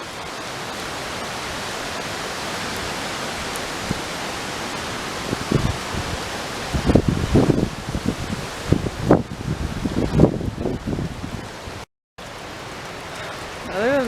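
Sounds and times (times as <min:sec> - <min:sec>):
wind buffeting microphone: 0:00.0 - 0:11.8
strong wind through trees: 0:00.0 - 0:14.0.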